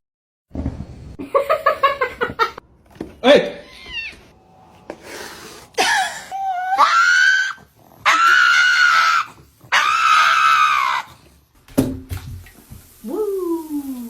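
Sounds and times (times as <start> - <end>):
animal screaming: 6.2 - 11.2.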